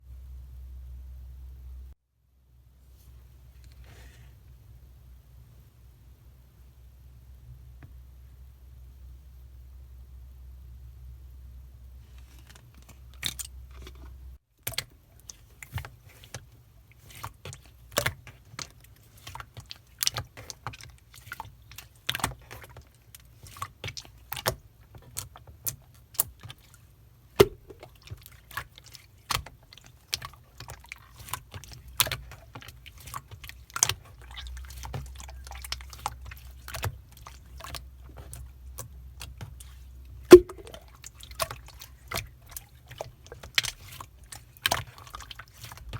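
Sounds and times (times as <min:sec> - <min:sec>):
slime squeezed by hand: 0:39.6 - 0:42.3.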